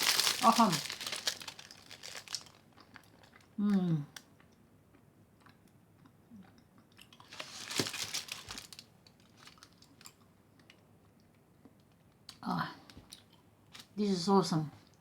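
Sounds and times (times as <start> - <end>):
person chewing crunchy chocolate: 0.0 - 8.8.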